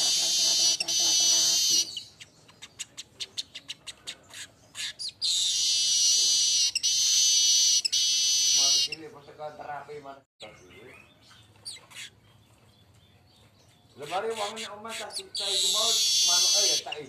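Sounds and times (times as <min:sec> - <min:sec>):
bird buzzing song: 0:00.0 - 0:09.0, 0:10.6 - 0:17.0.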